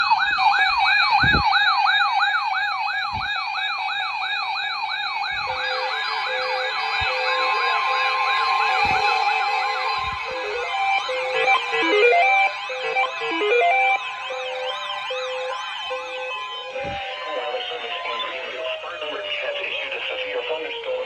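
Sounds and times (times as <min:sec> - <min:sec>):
low thumps: 0:00.0 - 0:01.7, 0:03.0 - 0:03.4, 0:05.2 - 0:05.8, 0:08.7 - 0:10.8
electronic siren wailing: 0:00.0 - 0:21.0
stepping siren pattern: 0:00.0 - 0:21.0.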